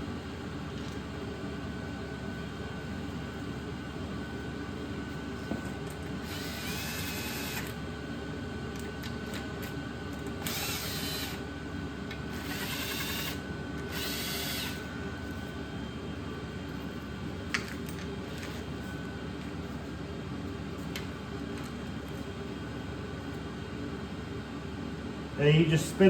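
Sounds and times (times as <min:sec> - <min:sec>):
background hum: 0:00.0 - 0:26.0
cordless drill whirring: 0:06.2 - 0:07.8, 0:10.4 - 0:11.5, 0:12.2 - 0:14.9.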